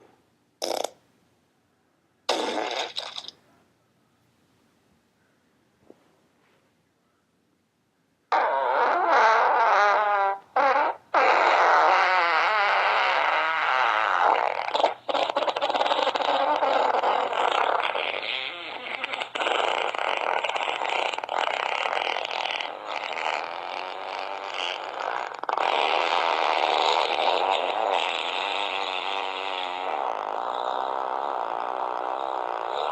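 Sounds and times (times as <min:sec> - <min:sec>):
fart sound effects: 0:00.6 - 0:01.0, 0:02.3 - 0:03.4, 0:08.3 - 0:32.9.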